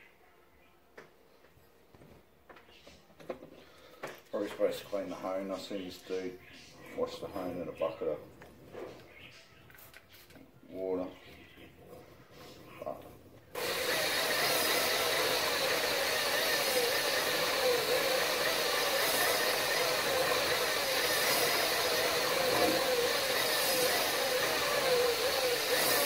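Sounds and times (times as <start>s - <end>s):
electric drill whining: 13.5s - 26.0s.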